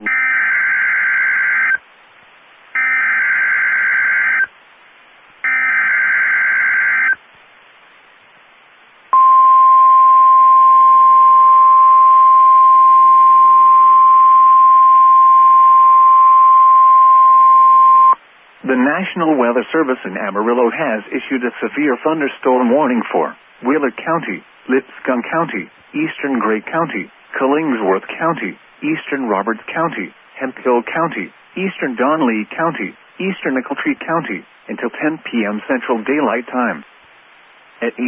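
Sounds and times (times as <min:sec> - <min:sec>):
faint radio hiss: 0:00.0 - 0:38.0
steady alarm tone: 0:02.8 - 0:04.5, 0:05.4 - 0:07.2.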